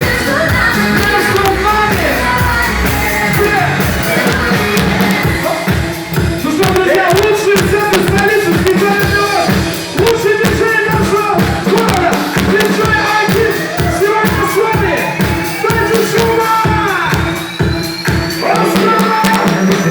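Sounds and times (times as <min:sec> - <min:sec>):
live dance music with drums: 0:00.0 - 0:19.9.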